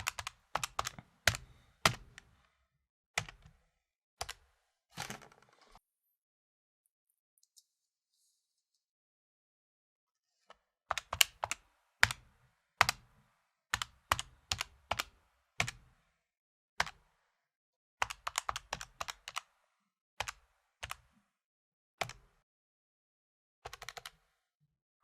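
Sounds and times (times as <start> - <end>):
calculator keys clicking: 0.0 - 2.3.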